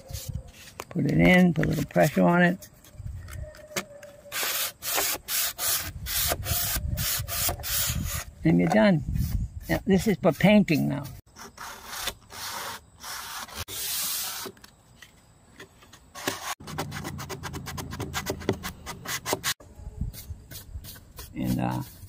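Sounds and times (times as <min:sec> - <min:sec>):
sandpaper rubbing on wood: 0:04.3 - 0:08.3, 0:09.2 - 0:14.5, 0:16.2 - 0:22.0.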